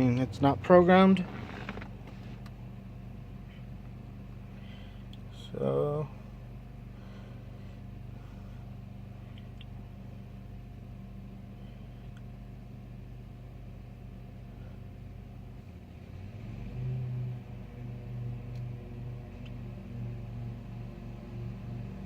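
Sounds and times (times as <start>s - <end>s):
vehicle engine idling: 0.0s - 16.4s.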